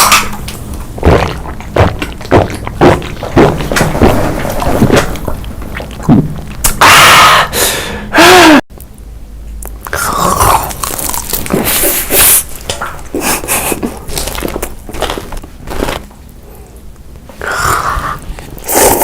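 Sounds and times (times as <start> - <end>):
crunching and chewing: 0.0 - 6.8, 9.6 - 16.3.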